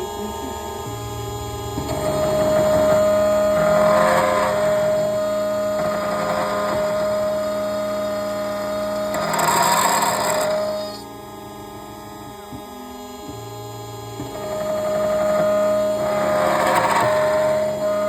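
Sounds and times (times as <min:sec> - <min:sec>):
key-cutting machine motor whine: 0:00.0 - 0:18.0
cutter milling a key: 0:01.7 - 0:12.1, 0:14.2 - 0:18.0.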